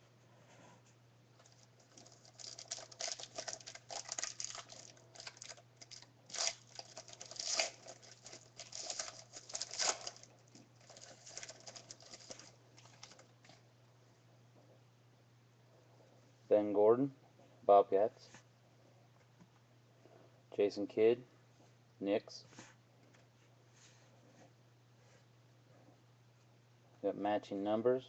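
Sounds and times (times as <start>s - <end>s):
trading cards rustling: 1.4s - 13.3s.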